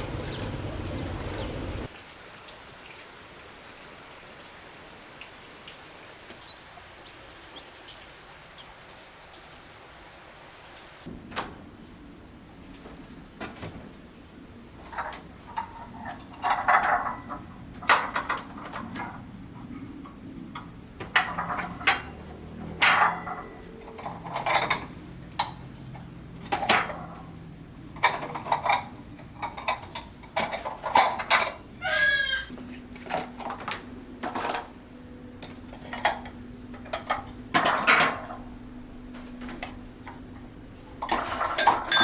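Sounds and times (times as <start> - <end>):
hard objects knocking and clattering: 20.5 - 25.6.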